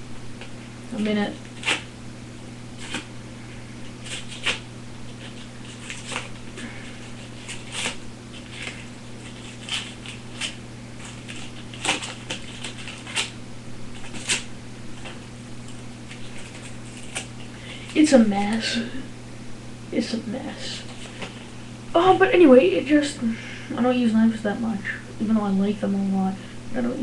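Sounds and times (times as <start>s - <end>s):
knife sawing through paper: 4.0s - 13.4s.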